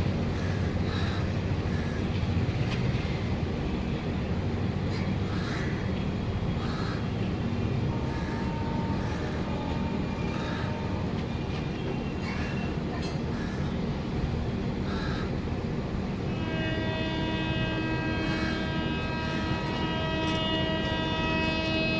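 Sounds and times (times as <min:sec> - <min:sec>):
train rumbling: 0:00.0 - 0:21.9
crows cawing: 0:04.9 - 0:05.8, 0:06.6 - 0:07.1, 0:14.9 - 0:15.3.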